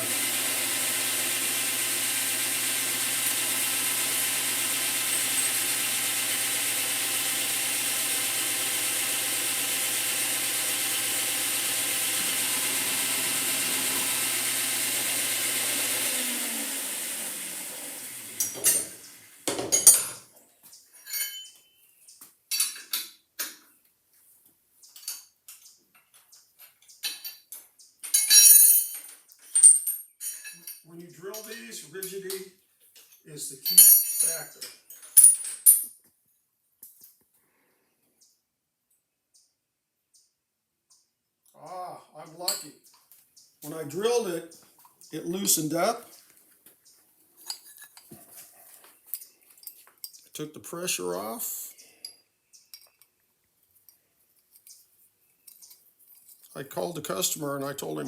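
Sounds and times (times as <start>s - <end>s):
milling machine drilling: 0.0s - 19.4s
metallic clinks and taps: 19.7s - 23.7s, 49.1s - 50.3s, 51.8s - 53.2s.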